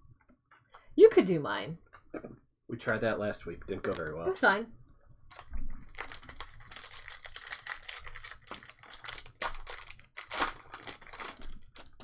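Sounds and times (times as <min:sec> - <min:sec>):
card wrappers crinkling: 0:05.3 - 0:12.0
wrapper ripping: 0:05.3 - 0:12.0.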